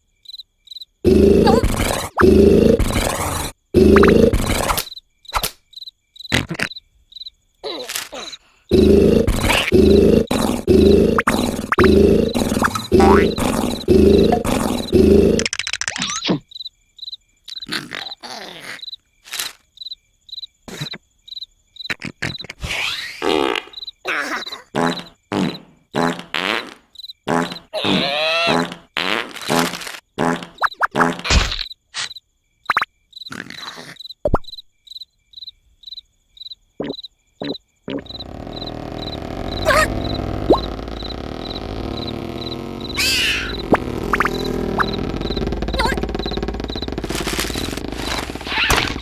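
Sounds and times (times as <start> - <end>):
crickets chirping: 0.0 - 22.0, 23.2 - 26.2, 26.8 - 28.8, 29.4 - 49.0
person snoring: 1.1 - 4.7, 8.7 - 15.4, 38.0 - 49.0
short squeaks and whistles: 42.4 - 46.9.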